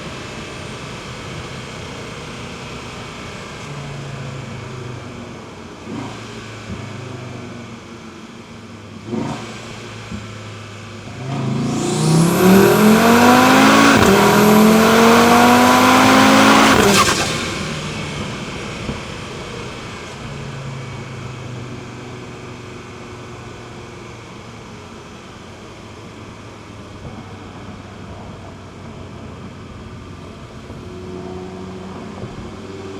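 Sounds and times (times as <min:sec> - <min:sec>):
car engine accelerating: 0:00.0 - 0:32.9
car engine cruising quietly: 0:09.9 - 0:32.6.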